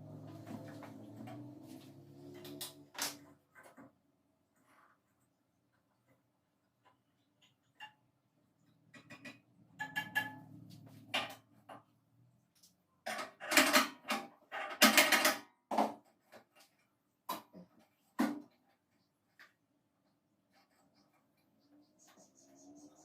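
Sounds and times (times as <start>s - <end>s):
clicks knocks and clattering scrapes: 0.1s - 5.3s, 8.6s - 19.6s.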